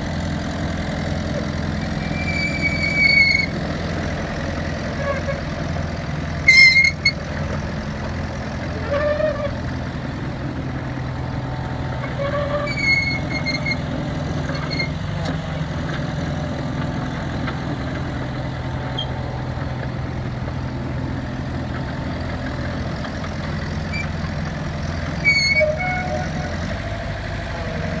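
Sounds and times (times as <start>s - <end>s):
excavator diesel engine running: 0.0s - 28.0s
high-pitched squeaks: 2.0s - 3.6s, 6.5s - 7.2s, 12.0s - 13.9s, 25.2s - 26.7s.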